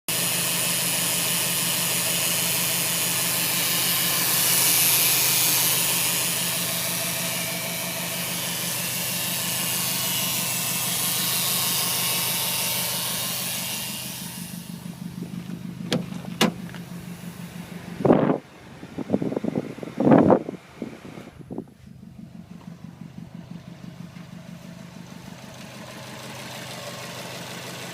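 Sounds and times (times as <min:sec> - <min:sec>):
car engine idling: 0:00.1 - 0:27.9
loud thump: 0:15.2 - 0:16.9.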